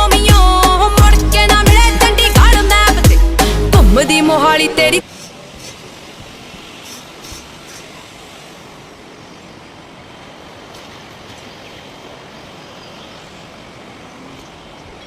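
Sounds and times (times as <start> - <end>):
steady rushing noise: 4.9 - 15.0.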